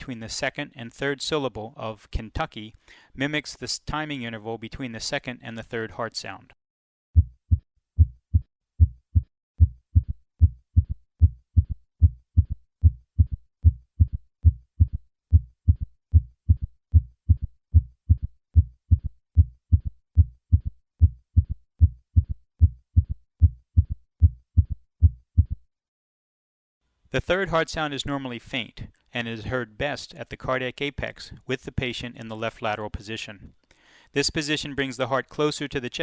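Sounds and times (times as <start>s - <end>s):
heartbeat thuds in galloping rhythm: 7.2s - 25.7s.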